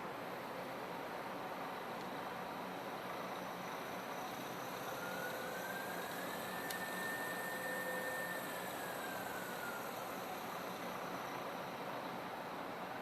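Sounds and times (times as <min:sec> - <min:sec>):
lathe whining: 0:03.1 - 0:12.2.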